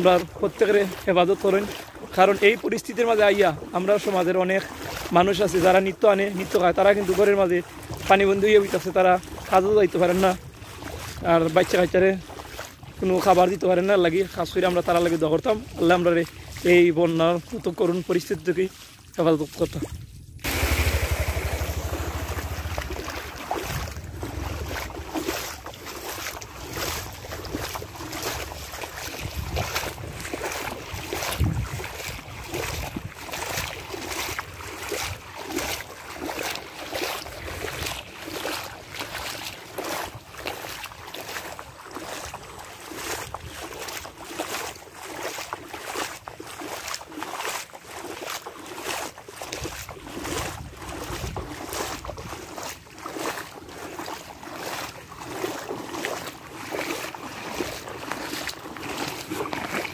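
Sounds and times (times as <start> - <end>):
floodwater splashing and sloshing: 0.0 - 59.9
wind on microphone: 19.7 - 25.3, 26.6 - 34.1, 50.2 - 52.4.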